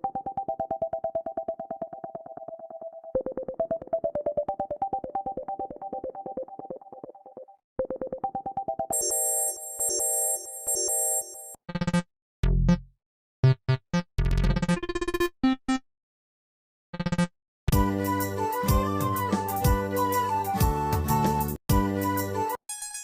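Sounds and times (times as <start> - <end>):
synthesized ringtone melody: 4.2 - 11.9
bright electronic ringtone: 8.0 - 11.6.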